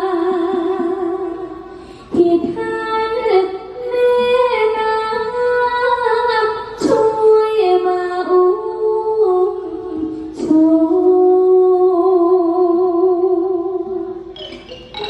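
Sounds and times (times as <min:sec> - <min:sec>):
girl singing slow melody: 0:00.0 - 0:14.4
musical accompaniment: 0:14.2 - 0:15.0
sharp percussion strikes: 0:14.3 - 0:15.0.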